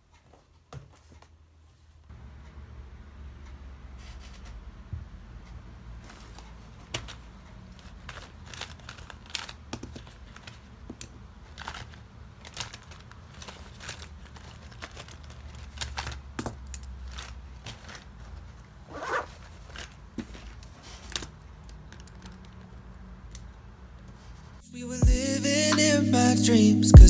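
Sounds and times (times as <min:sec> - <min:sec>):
crinkly rustles: 0:06.0 - 0:24.6.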